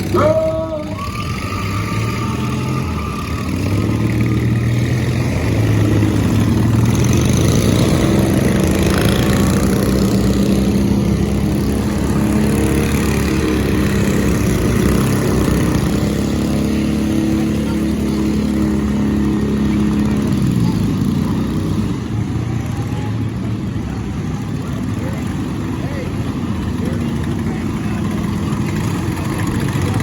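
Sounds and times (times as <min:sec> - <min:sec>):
racing lawn mower engines: 0:00.0 - 0:30.0.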